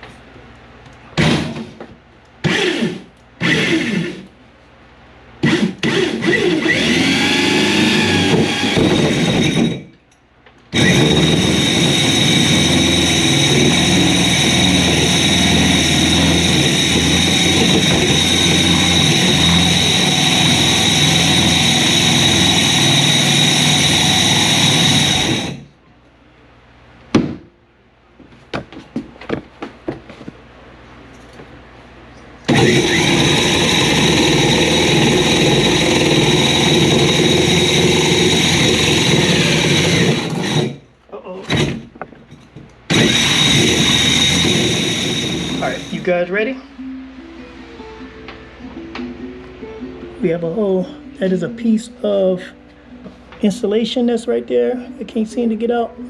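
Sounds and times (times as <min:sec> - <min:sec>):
power drill whining: 0:02.5 - 0:04.2, 0:05.4 - 0:09.8, 0:10.7 - 0:25.7, 0:32.5 - 0:40.8, 0:41.5 - 0:41.8, 0:42.9 - 0:46.1.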